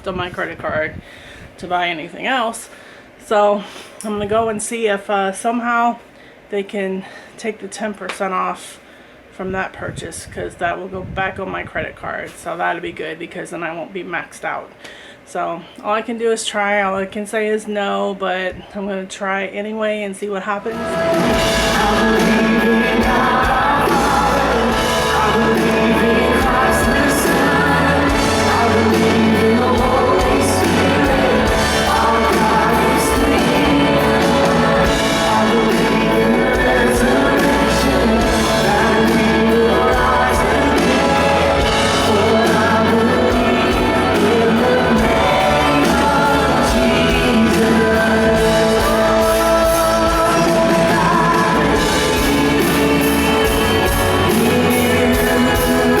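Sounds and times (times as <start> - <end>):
praise team singing: 20.6 - 56.0
backing band drums and guitar: 20.7 - 56.0.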